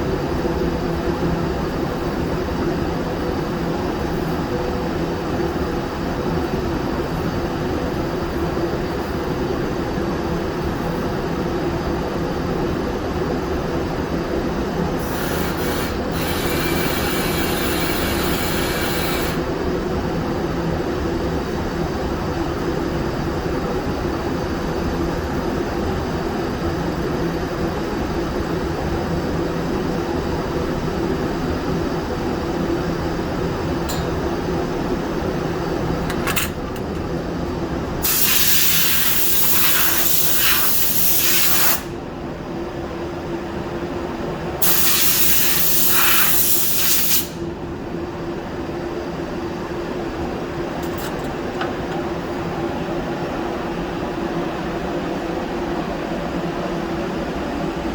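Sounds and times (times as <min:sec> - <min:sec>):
steady machine drone: 0:00.0 - 0:38.2
spray gun air hiss: 0:15.0 - 0:19.5, 0:38.0 - 0:41.9, 0:44.6 - 0:47.4.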